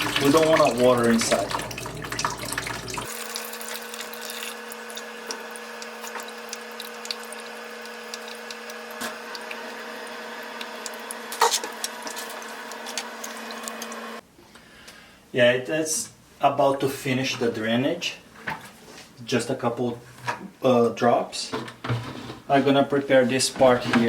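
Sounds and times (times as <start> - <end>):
water trickling and dripping: 0.0 - 8.8.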